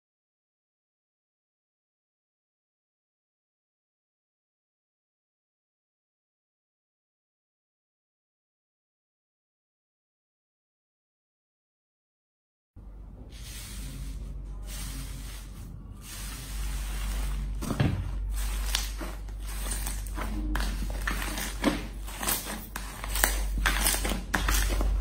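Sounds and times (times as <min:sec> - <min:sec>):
slime rustling by hand: 0:13.3 - 0:25.0.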